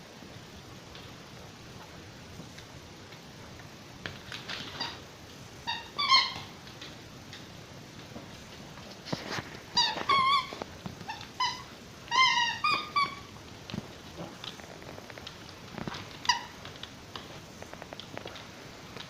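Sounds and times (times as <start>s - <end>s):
squeaky toy ball squeaks: 5.6s - 6.5s, 9.8s - 13.3s, 16.2s - 16.6s.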